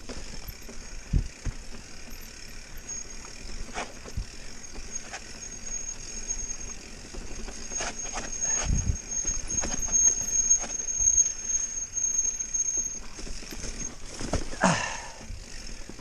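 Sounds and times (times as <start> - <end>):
mountain bike rattling: 0.0 - 16.0
high brake squeal: 2.6 - 14.0.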